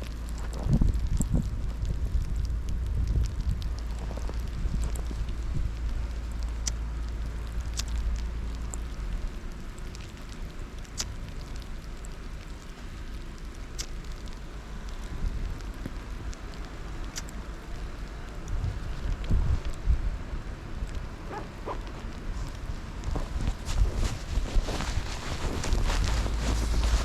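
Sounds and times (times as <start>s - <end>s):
wind rumbling on microphone: 0.0s - 27.0s
blowing snow hiss: 21.5s - 27.0s.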